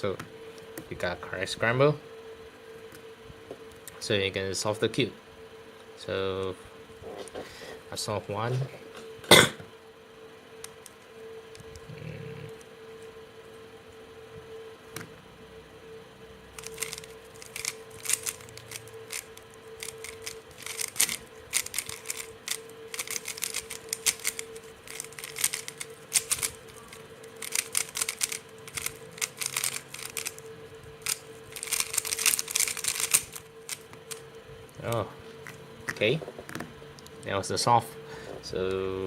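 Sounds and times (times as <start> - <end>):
faint steady hum: 0.0 - 39.0
puzzle cube clattering clicks: 16.6 - 30.4, 31.0 - 34.2.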